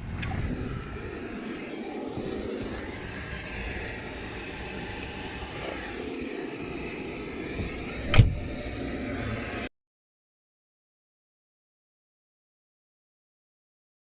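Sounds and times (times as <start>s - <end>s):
loud thump: 8.0s - 8.5s.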